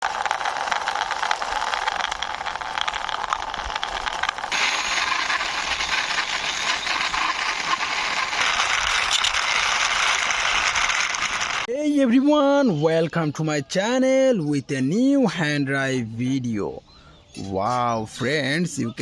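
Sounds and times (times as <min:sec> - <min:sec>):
toy cars rolling on hard surface: 0:00.0 - 0:11.7.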